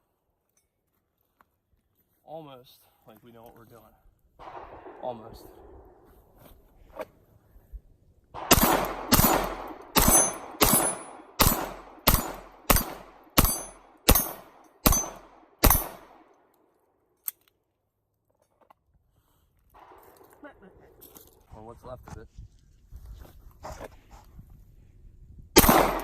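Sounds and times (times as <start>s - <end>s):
pistol shots: 4.4s - 6.0s, 8.4s - 16.3s, 25.6s - 26.0s.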